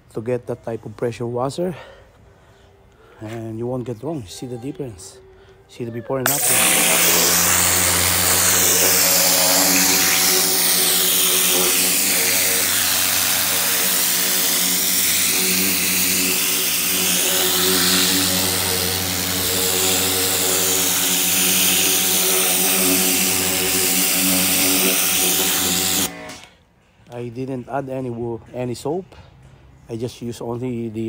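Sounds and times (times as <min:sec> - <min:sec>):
water jet hissing on carpet: 0:06.3 - 0:26.1
pressure washer pump humming: 0:06.3 - 0:26.5.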